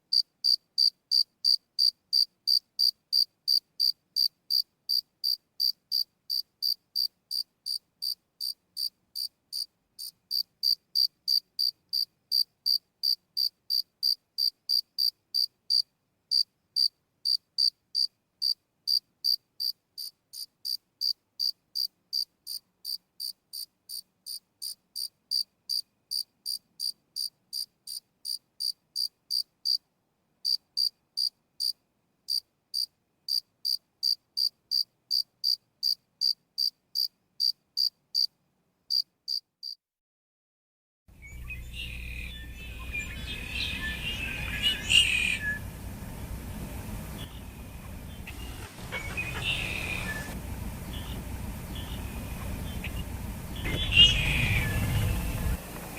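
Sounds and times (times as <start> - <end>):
cricket chirping: 0.1 - 29.8, 30.4 - 38.3, 38.9 - 39.8.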